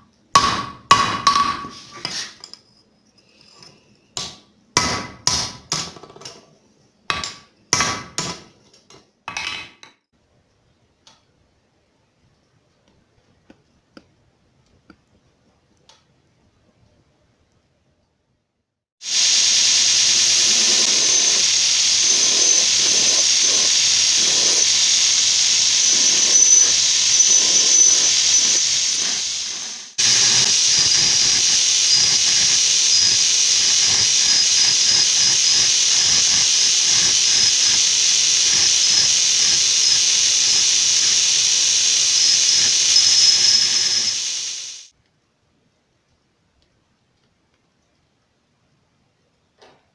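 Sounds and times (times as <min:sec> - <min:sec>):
loud high-pitched hissing: 0:19.0 - 0:44.9.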